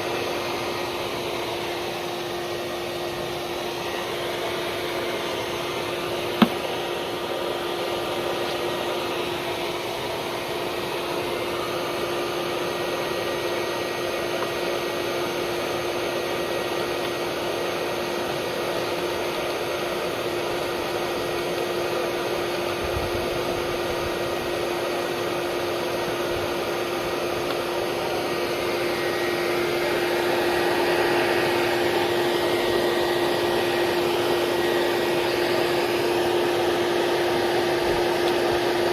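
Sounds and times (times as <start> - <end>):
vacuum motor running: 0.0 - 38.9.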